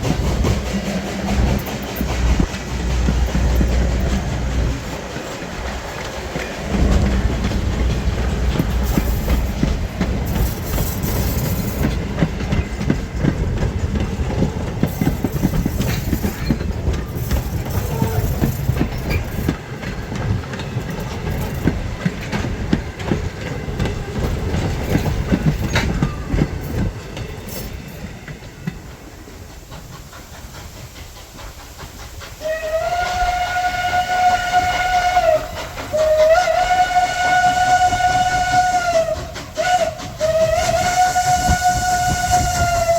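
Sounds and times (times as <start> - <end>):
train wheels clicking over rail joints: 0.0 - 42.9
steam whistle blowing: 32.4 - 42.9.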